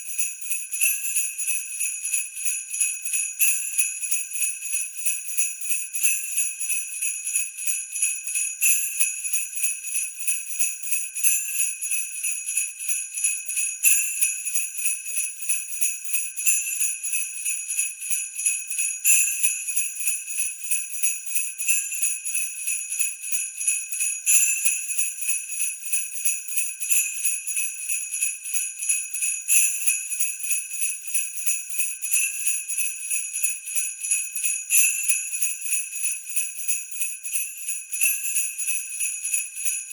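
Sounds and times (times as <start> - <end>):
sleigh bells jingling: 17.7 - 39.9.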